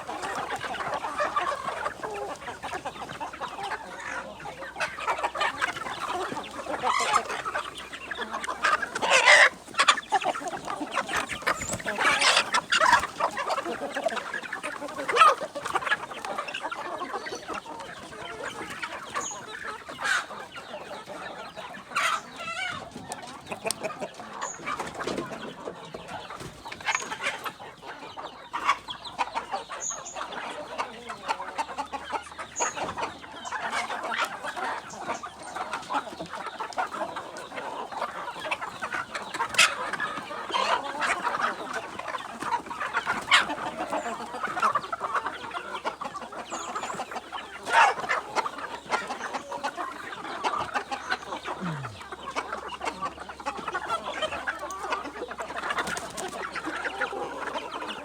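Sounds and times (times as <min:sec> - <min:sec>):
chickens clucking: 0:00.0 - 0:58.0.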